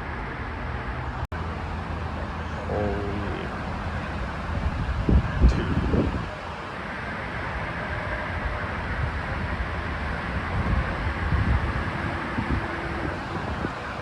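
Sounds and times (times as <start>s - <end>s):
gusty wind buffeting microphone: 3.4s - 14.0s.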